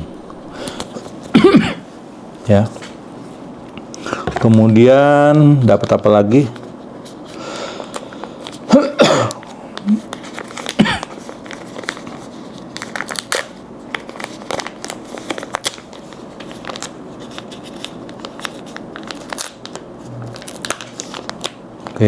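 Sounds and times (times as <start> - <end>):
plastic packaging crinkling: 9.3 - 22.0
small crackles and clicks: 11.4 - 22.0.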